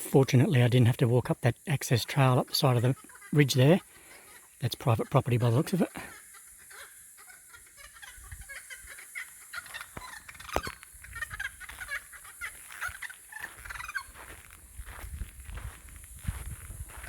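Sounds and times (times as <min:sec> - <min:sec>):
birds chirping and clucking: 0:00.0 - 0:17.0
soft footsteps: 0:12.5 - 0:17.0.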